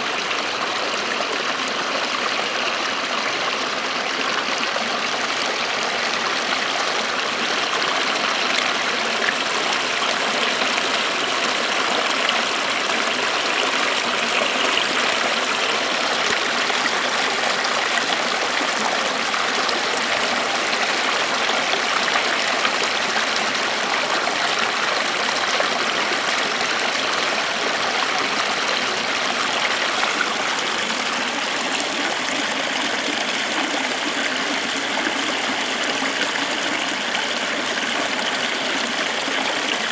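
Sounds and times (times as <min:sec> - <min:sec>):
small waterfall splashing: 0:00.0 - 0:39.9.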